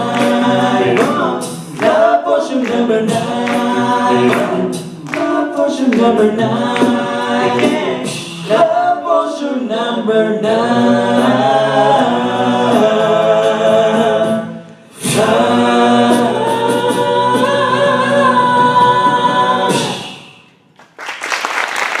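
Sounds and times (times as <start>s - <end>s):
vocal group singing in harmony: 0.0s - 20.6s
applause: 20.7s - 22.0s.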